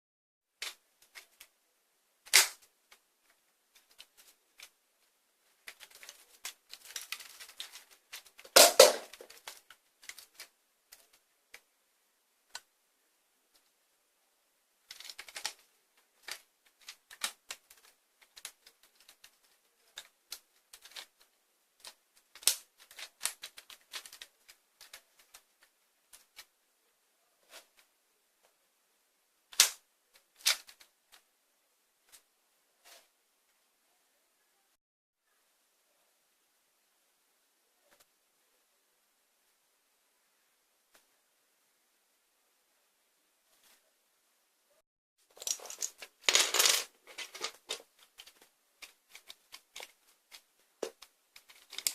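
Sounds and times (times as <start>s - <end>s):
sharp plastic snaps: 2.2s - 2.7s, 29.5s - 29.8s.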